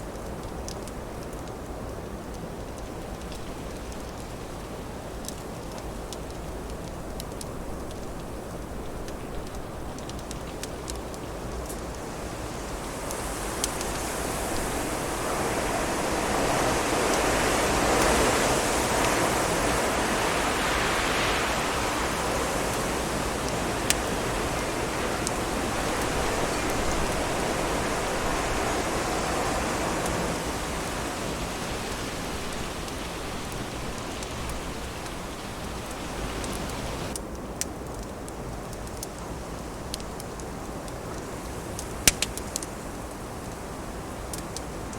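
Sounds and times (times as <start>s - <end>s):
wood fire crackling: 0.0s - 44.9s
wind gusting: 11.8s - 37.2s.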